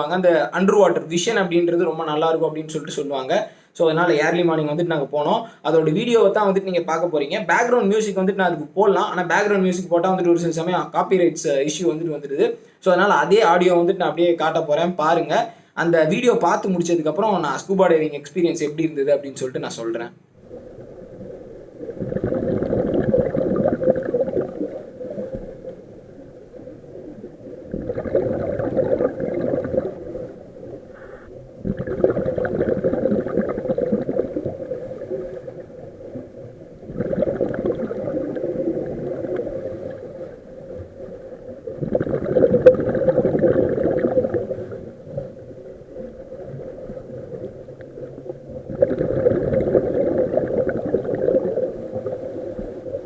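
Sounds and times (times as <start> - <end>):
bubbles gurgling underwater: 20.4 - 53.0.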